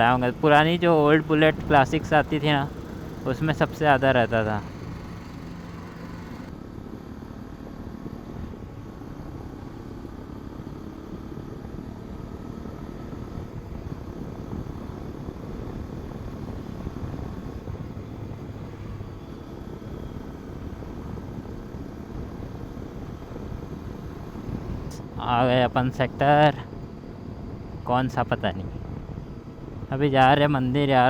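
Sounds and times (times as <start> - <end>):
motorcycle engine running: 0.0 - 6.6.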